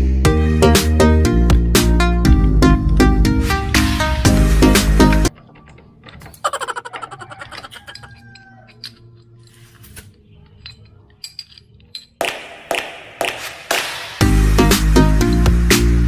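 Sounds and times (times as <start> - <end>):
metal tools clinking: 5.3 - 12.2.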